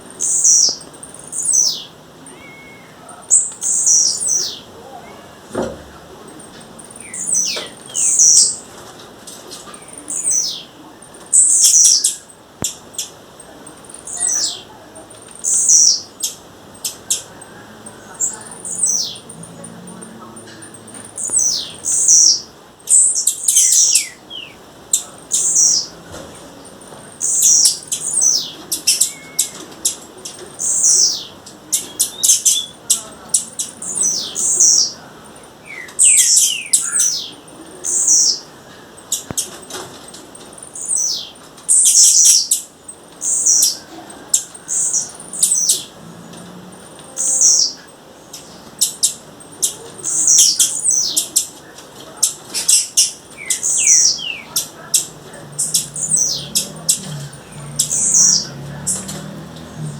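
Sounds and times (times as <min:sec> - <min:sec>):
bird calling: 0:00.0 - 0:08.7, 0:13.8 - 0:39.5, 0:52.6 - 0:59.9.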